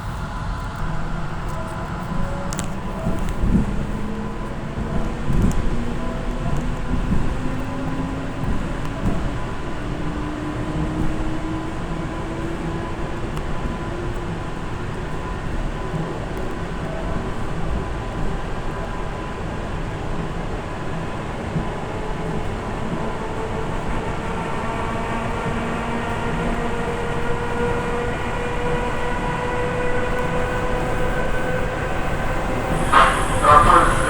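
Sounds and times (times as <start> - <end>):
train rumbling on rails: 0.0 - 34.0
train whine rising in pitch: 22.0 - 34.0.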